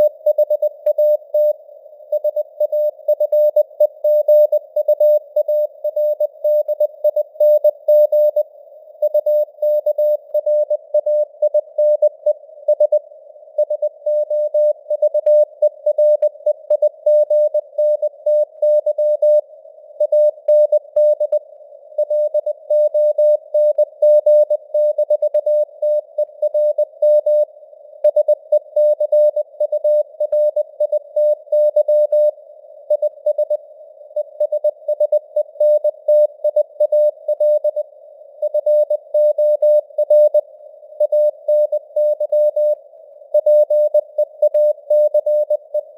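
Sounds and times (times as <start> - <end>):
faint radio noise hiss: 32.2 - 39.1, 39.8 - 42.0, 42.7 - 43.4.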